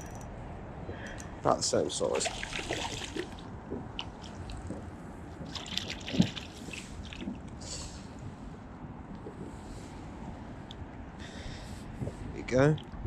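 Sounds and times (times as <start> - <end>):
water trickling and dripping: 2.0 - 7.8
small splashes and clicks: 2.1 - 7.6.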